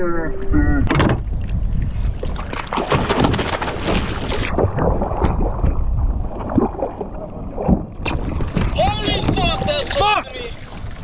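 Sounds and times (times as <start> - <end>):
wind buffeting microphone: 0.0 - 11.0
water splashing against kayak: 0.8 - 11.0.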